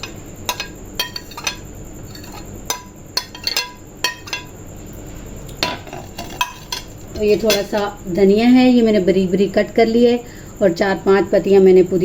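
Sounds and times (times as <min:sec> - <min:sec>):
spoon clinking against bowl: 0:00.0 - 0:04.5.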